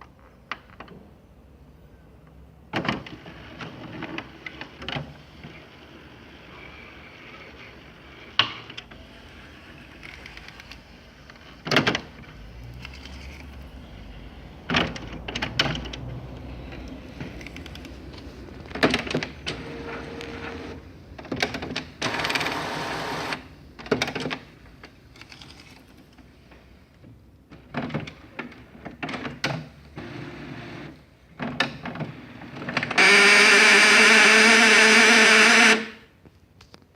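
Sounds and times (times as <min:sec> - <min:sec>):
printer rattling: 0:17.0 - 0:24.5
loud steady buzzing tone: 0:33.0 - 0:36.0.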